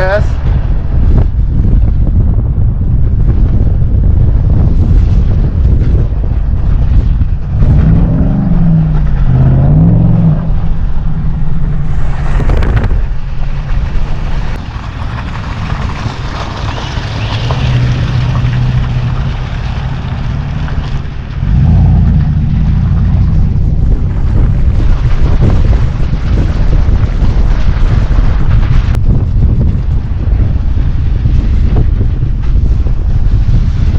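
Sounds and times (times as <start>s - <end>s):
truck engine revving: 7.4s - 27.5s.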